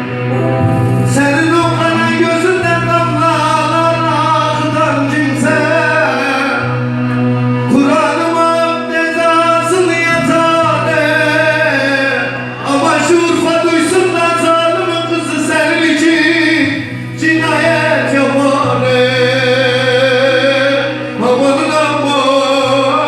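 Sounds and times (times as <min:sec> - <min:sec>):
low drone: 0:00.0 - 0:04.2
person singing folk song: 0:00.0 - 0:23.0.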